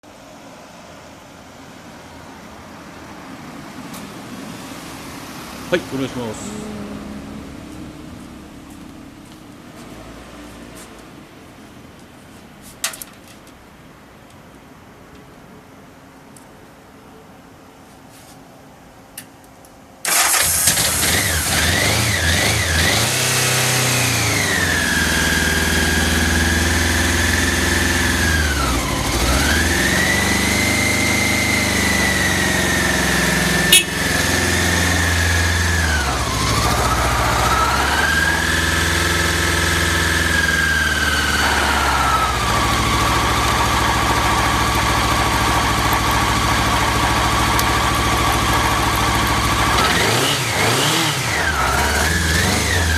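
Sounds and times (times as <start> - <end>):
engine starting and idling: 20.0 - 25.7, 33.3 - 52.9.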